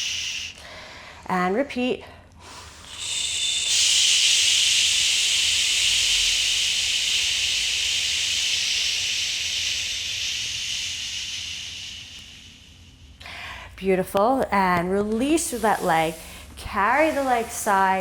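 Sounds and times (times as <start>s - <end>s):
hissing exhale through teeth: 2.5s - 13.5s.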